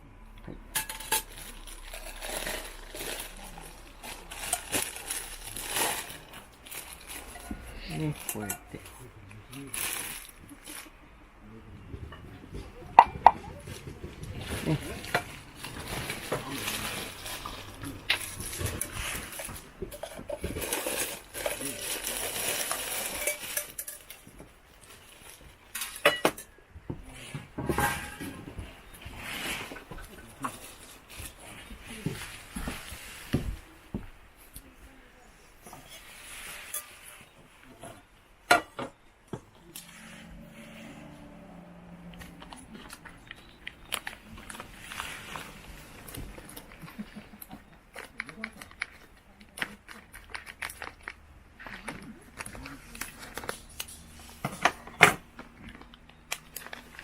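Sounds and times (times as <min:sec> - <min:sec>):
metal cookware clinking: 0:25.8 - 0:26.6, 0:27.6 - 0:28.6
low motor hum: 0:39.6 - 0:46.4.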